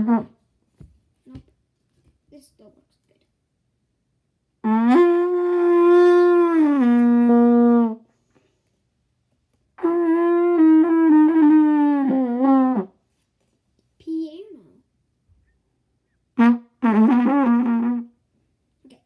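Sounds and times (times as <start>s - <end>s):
trumpet playing: 0.0s - 0.4s, 4.6s - 8.0s, 9.8s - 13.0s, 16.4s - 18.2s.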